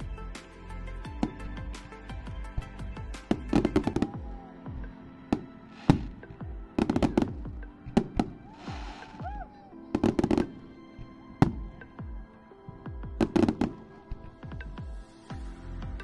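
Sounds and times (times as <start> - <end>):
music playing: 0.0 - 16.0
fireworks banging and crackling: 3.2 - 9.4, 10.0 - 10.6, 11.4 - 11.9, 12.7 - 14.7
hissing firework burst: 5.6 - 6.2, 8.1 - 9.3.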